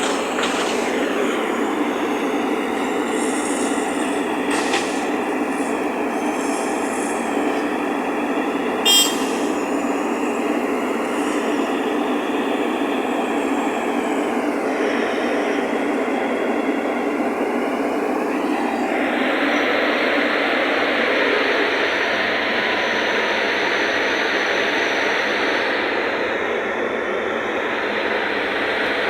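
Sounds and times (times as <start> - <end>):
diesel engines running: 0.0 - 29.0
short high-pitched beep: 8.9 - 9.6.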